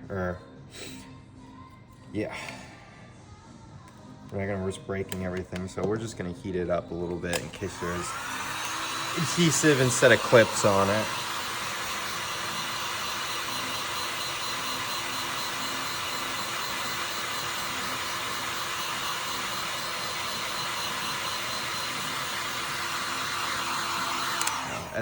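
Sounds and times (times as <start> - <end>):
hot-air blower whooshing hiss: 7.3 - 25.0.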